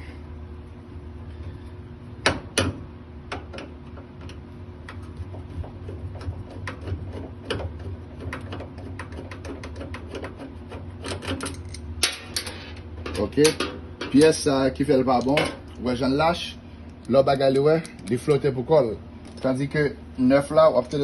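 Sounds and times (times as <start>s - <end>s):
steady low hum: 0.0s - 21.0s.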